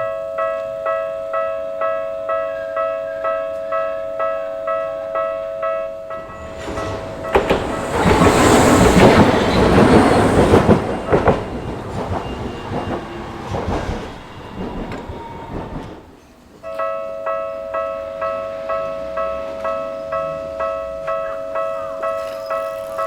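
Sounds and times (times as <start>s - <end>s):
train running past: 6.0s - 16.7s, 17.3s - 23.0s
train wheel clacks: 6.2s - 16.3s.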